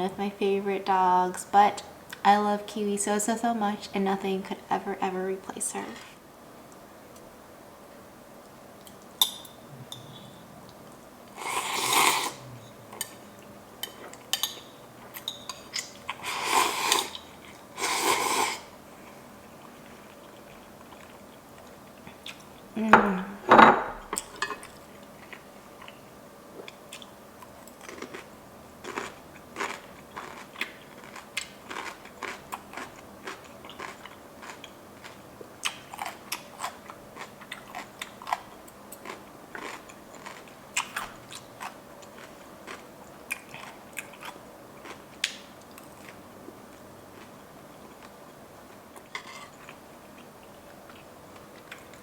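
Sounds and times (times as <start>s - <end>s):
person chewing crunchy food: 24.6s - 52.0s.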